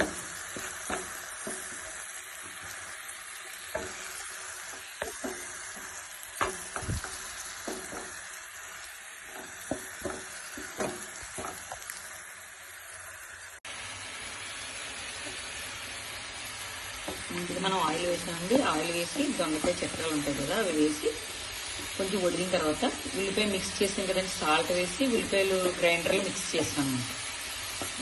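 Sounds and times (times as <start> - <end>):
spatula knocking against pan: 0.0 - 2.0, 5.0 - 8.2, 9.3 - 11.8
vegetables sizzling in hot oil: 0.0 - 28.0.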